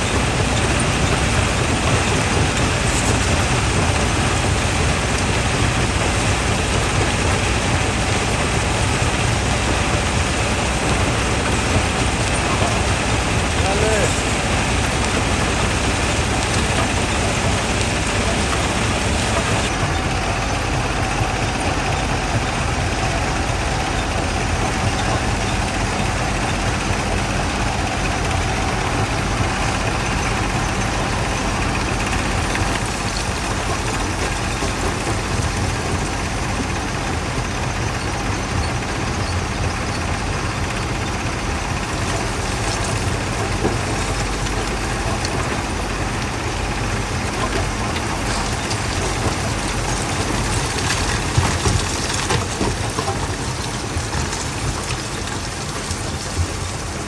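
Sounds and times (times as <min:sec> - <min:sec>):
rock crusher machinery din: 0:00.0 - 0:57.0.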